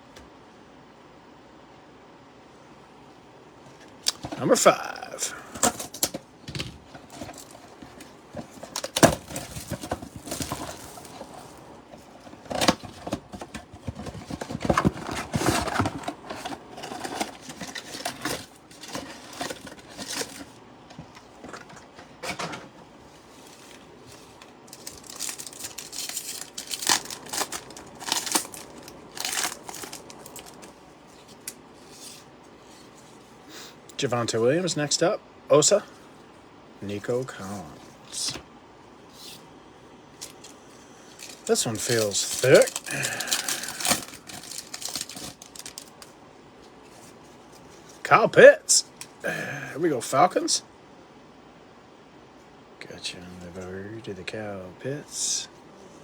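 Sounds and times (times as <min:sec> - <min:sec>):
wrapper crinkling: 0:06.9 - 0:20.6, 0:23.3 - 0:32.2, 0:40.2 - 0:46.2
cards being handled: 0:23.3 - 0:33.2, 0:40.2 - 0:46.1
wrapper ripping: 0:24.7 - 0:30.7, 0:41.1 - 0:46.1.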